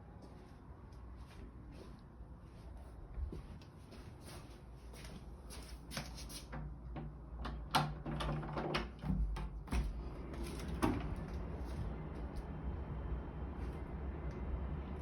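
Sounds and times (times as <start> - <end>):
low steady hum: 6.6 - 15.0.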